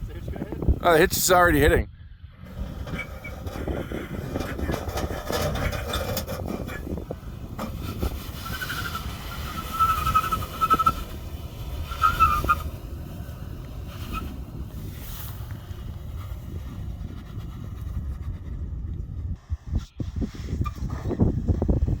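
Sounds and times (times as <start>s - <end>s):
vehicle engine low rumble: 0.0s - 22.0s
high squeal: 2.4s - 7.0s, 7.8s - 11.1s, 11.8s - 12.7s.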